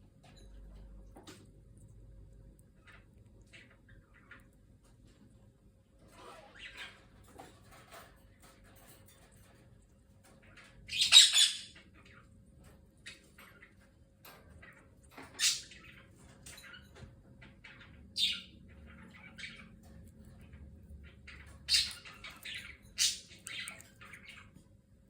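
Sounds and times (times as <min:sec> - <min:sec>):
parrot high-pitched chirps: 0:10.9 - 0:12.2, 0:17.7 - 0:19.7, 0:21.3 - 0:24.5
parrot eating clicks: 0:21.8 - 0:24.5.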